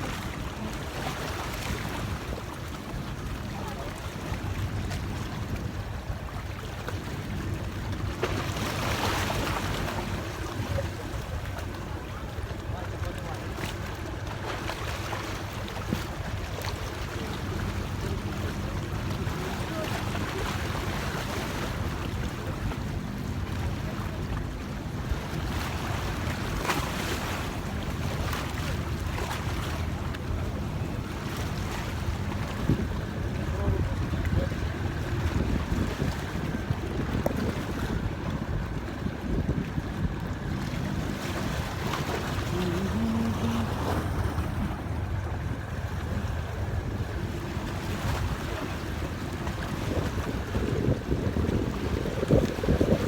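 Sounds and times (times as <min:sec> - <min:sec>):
sea waves splashing against rocks: 0:00.0 - 0:53.0
steady low rumble: 0:29.8 - 0:49.4
sea waves hitting rocks: 0:35.3 - 0:53.0.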